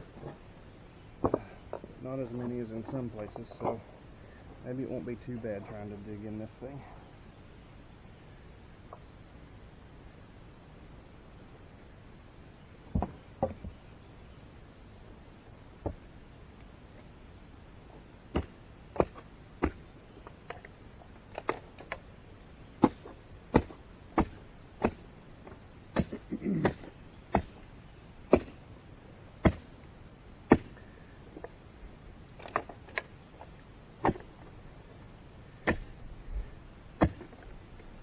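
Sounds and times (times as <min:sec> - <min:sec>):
rock and soil scraping: 0:01.2 - 0:06.8, 0:22.8 - 0:27.7, 0:32.2 - 0:38.0
digging tool striking rocky ground: 0:22.8 - 0:25.0, 0:25.9 - 0:27.6, 0:28.3 - 0:28.6, 0:29.4 - 0:29.7, 0:30.5 - 0:30.8, 0:34.0 - 0:34.3, 0:35.6 - 0:36.0, 0:37.0 - 0:37.4.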